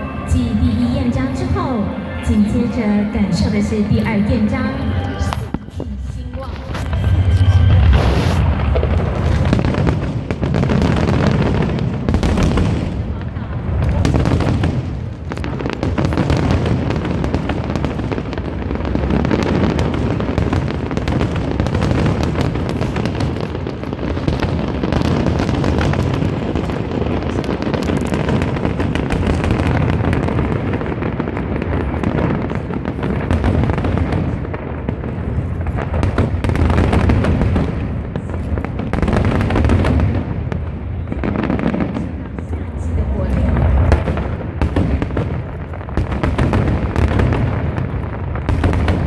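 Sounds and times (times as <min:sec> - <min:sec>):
fireworks bangs and crackles: 0:00.0 - 0:49.0.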